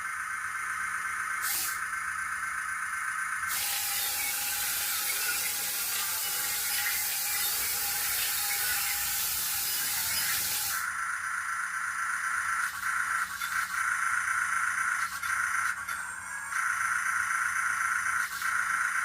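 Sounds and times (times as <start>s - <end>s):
toy excavator hiss: 0.0s - 19.0s
buzzy electronic tone: 3.5s - 10.8s.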